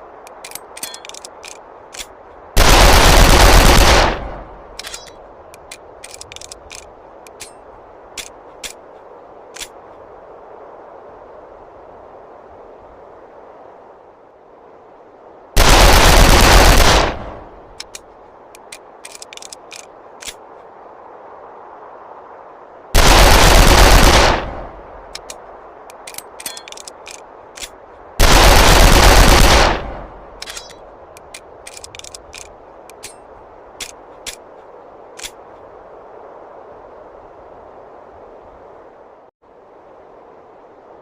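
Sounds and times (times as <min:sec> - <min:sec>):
light clicks: 0:00.2 - 0:02.4, 0:04.8 - 0:10.0, 0:17.8 - 0:20.7, 0:30.4 - 0:35.7.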